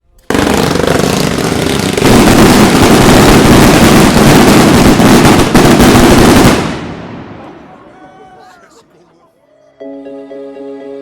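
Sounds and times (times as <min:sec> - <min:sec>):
firecrackers crackling: 0:00.3 - 0:08.8.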